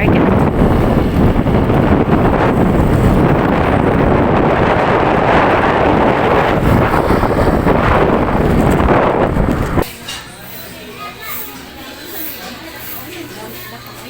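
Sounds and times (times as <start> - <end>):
wind buffeting microphone: 0.0 - 9.9
vehicle and road noise: 0.0 - 10.4.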